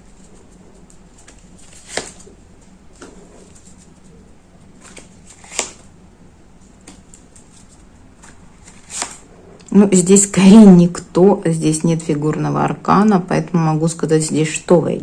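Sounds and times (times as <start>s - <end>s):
cards being handled: 0.1s - 5.9s, 6.6s - 9.3s
card snaps: 1.7s - 2.3s, 4.8s - 5.9s.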